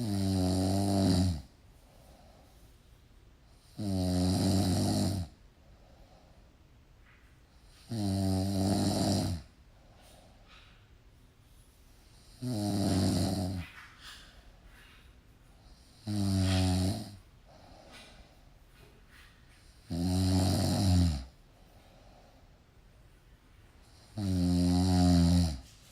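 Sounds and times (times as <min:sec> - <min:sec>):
person snoring: 0:00.0 - 0:01.5, 0:03.6 - 0:05.3, 0:07.8 - 0:09.5, 0:12.2 - 0:13.7, 0:15.8 - 0:17.2, 0:19.8 - 0:21.3, 0:23.9 - 0:25.7
quiet breaths: 0:00.0 - 0:25.9.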